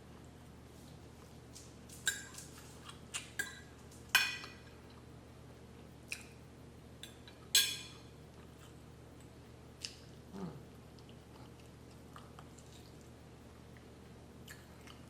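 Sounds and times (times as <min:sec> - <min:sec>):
soft chewing: 0:00.2 - 0:05.2, 0:06.0 - 0:06.4, 0:07.0 - 0:15.0
cutlery clinking on plate: 0:03.4 - 0:04.7, 0:07.1 - 0:08.0.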